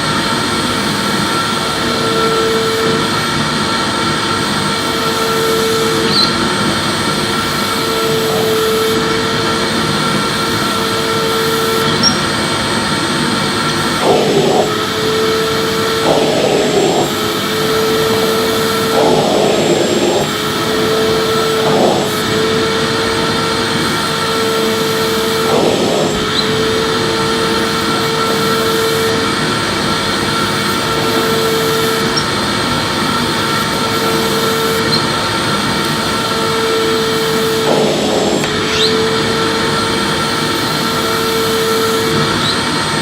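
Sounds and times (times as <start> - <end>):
vacuum cleaner running: 0.0 - 43.0.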